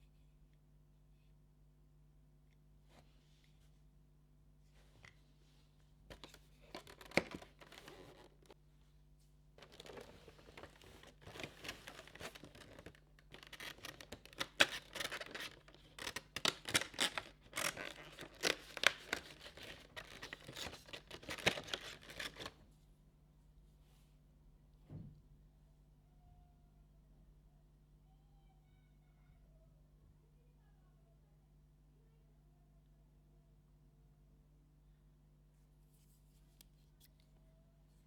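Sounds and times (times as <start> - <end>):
cardboard tearing and crinkling: 9.6 - 22.5.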